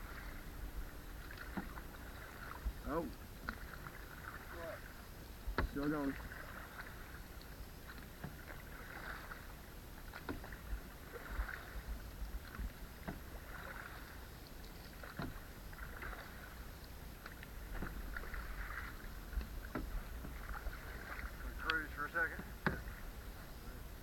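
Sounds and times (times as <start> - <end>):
paddle strokes swishing through water: 0.0 - 24.0.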